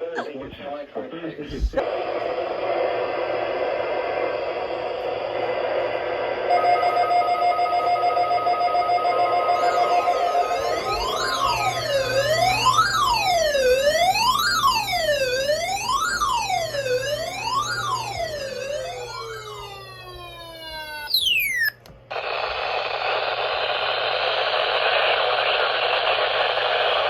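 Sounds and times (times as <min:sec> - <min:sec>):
electronic siren sweeping: 0:06.4 - 0:21.9
falling chirp: 0:20.6 - 0:21.8
loud static hiss: 0:22.1 - 0:27.0.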